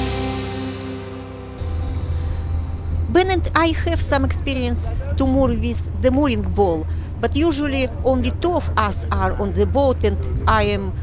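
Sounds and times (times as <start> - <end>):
music with held notes: 0.0 - 3.1
low steady rumble: 0.0 - 11.0.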